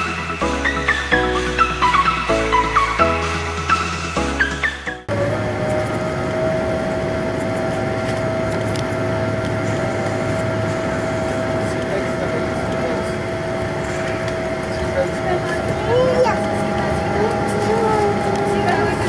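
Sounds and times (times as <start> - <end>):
engine whine: 0.0 - 19.0
aircraft cabin drone: 4.8 - 19.0.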